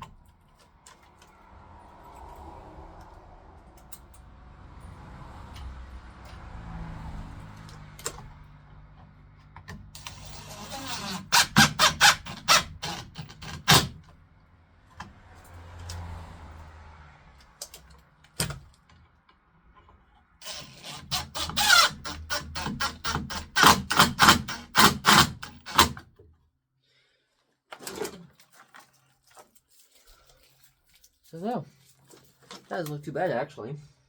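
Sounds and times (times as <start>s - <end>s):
cordless drill driving screws: 10.0s - 14.0s, 20.4s - 26.0s.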